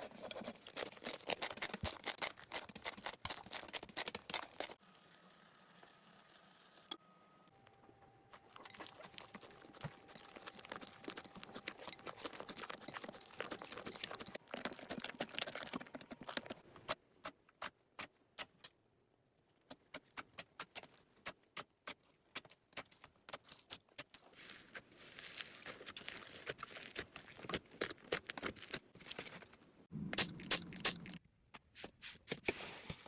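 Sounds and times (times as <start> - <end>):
sharp clicks and pops: 30.0 - 31.2.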